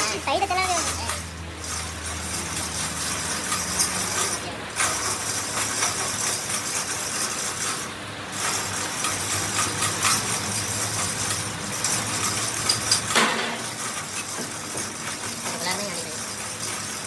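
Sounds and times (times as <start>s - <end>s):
metal parts clicking and rattling: 0.0s - 17.0s.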